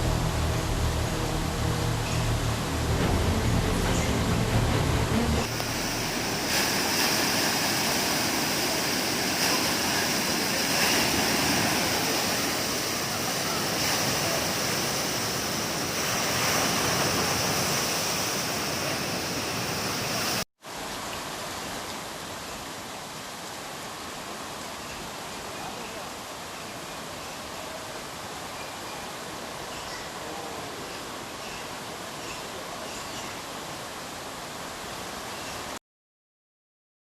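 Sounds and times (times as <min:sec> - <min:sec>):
floodwater rushing: 0:00.0 - 0:28.5.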